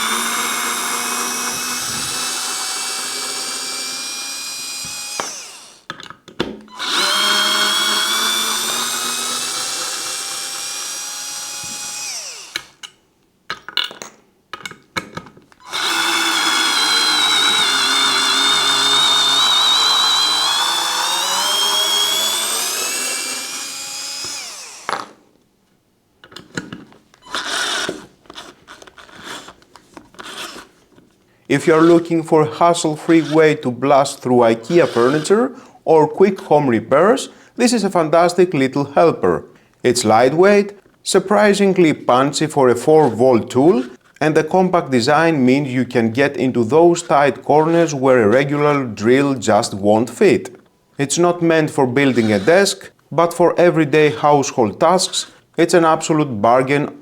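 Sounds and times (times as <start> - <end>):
cordless screwdriver motor whine: 0.0 - 5.8, 6.7 - 12.8, 15.6 - 25.1, 34.8 - 35.3.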